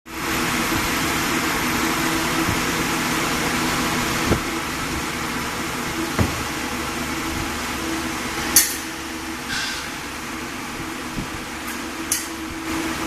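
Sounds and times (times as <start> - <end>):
machinery hum: 0.1 - 13.0
sharp knocks: 6.2 - 6.6.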